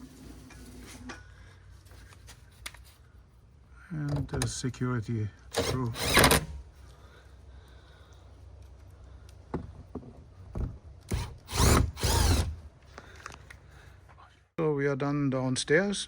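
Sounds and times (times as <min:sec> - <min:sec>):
power drill-driver driving screws: 0:05.5 - 0:06.6, 0:11.1 - 0:12.7.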